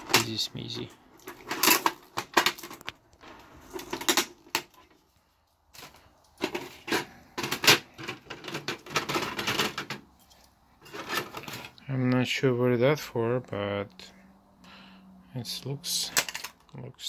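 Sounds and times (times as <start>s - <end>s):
plastic parts clicking and knocking: 0.0s - 5.0s, 5.7s - 10.1s.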